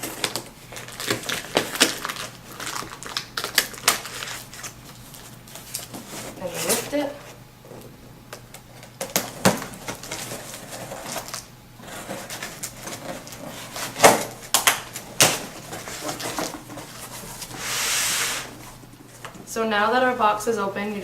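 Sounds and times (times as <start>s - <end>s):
cardboard box rustling and scraping: 15.6s - 18.8s.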